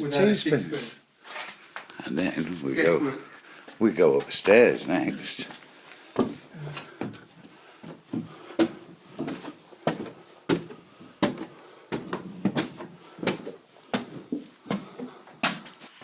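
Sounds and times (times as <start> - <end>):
footsteps climbing stairs: 3.7 - 15.8.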